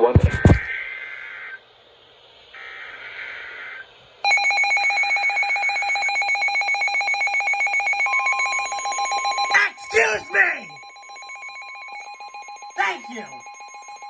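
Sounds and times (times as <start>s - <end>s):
buzzy digital data burst: 0.0s - 0.7s
steady single-pitch warning tone: 4.2s - 14.0s
weather radio alarm beeping: 4.2s - 14.0s.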